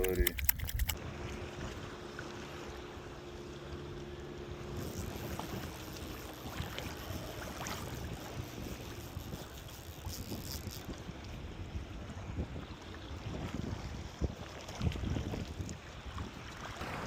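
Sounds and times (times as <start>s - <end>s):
clicks: 0.0s - 1.0s.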